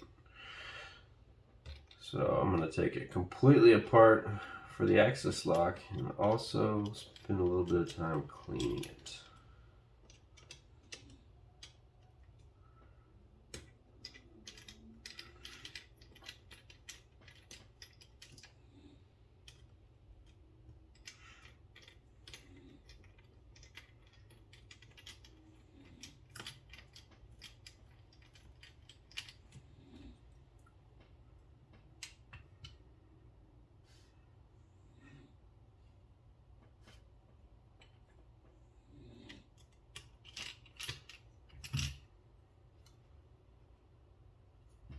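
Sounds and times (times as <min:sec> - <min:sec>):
low steady hum: 0:00.0 - 0:44.9
small metal clicks and ticks: 0:04.8 - 0:12.9, 0:13.5 - 0:32.8, 0:39.2 - 0:42.1.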